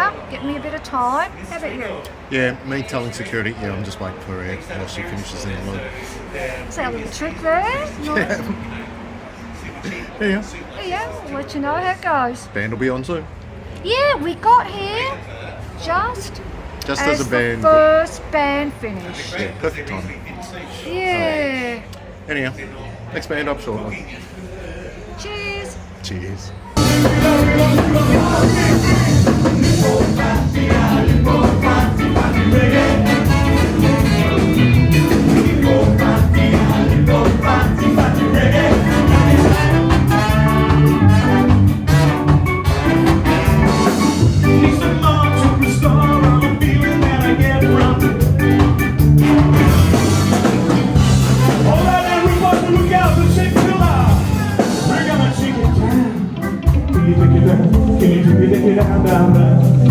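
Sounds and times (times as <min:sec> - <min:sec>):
person singing: 0:26.8 - 0:41.5, 0:43.6 - 0:48.8, 0:54.5 - 0:59.9
ska band playing live: 0:26.8 - 0:59.9.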